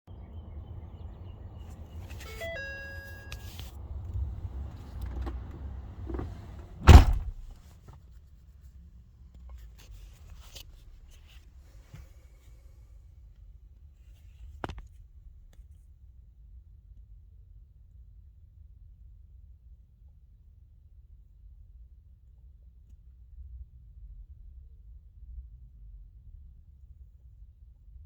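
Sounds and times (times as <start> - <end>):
low engine rumble: 0.1 - 7.7
dashboard warning chime: 1.8 - 6.7
loud thump: 4.2 - 7.6.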